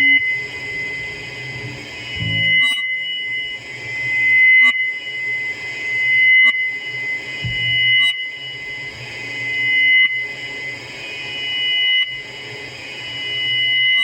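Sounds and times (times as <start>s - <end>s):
low amplifier hum: 0.0s - 3.6s, 7.4s - 8.0s
high-pitched ringing bass tone: 0.0s - 12.4s.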